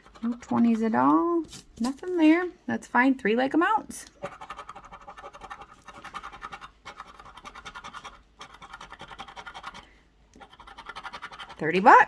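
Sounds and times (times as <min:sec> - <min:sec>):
scratching lottery ticket: 0:04.2 - 0:12.0.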